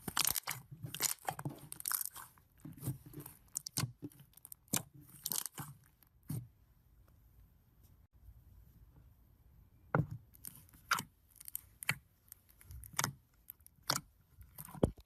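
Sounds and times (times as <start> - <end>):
slime crackling and popping: 0.0 - 2.3, 3.5 - 5.7, 10.4 - 14.0.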